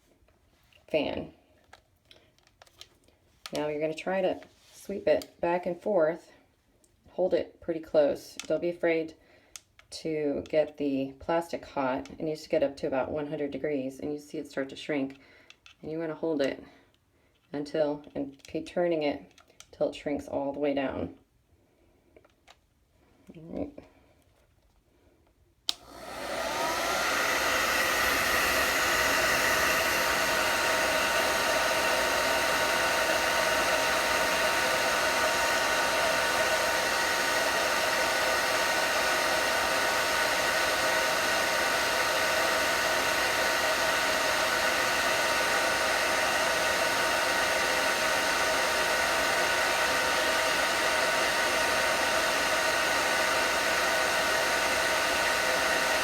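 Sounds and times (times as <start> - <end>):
hair dryer motor whine and air rush: 25.7 - 56.0
hair dryer switch click: 25.7 - 56.0.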